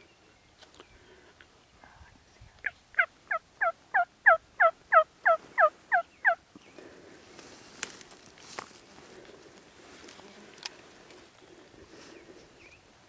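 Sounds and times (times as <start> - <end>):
wild turkey yelping: 3.0 - 6.4.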